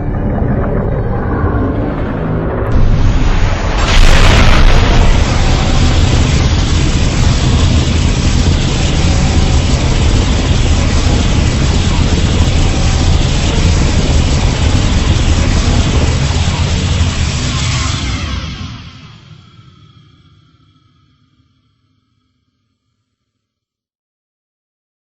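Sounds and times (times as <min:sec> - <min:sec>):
heavy rumble with hiss: 0:02.7 - 0:19.5.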